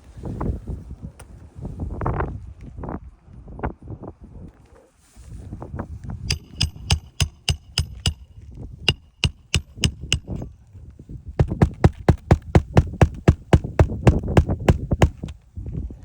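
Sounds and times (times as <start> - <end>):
hammer strikes with metallic ring: 6.3 - 8.3, 8.9 - 10.5, 11.4 - 15.3.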